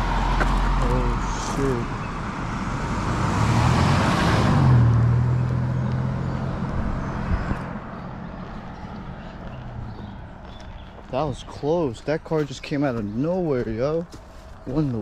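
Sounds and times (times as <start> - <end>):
car passing at speed: 0.0 - 10.5.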